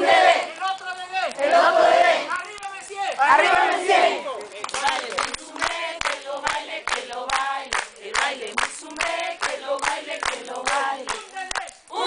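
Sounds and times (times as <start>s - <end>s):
women singing in chorus: 4.8s - 12.0s.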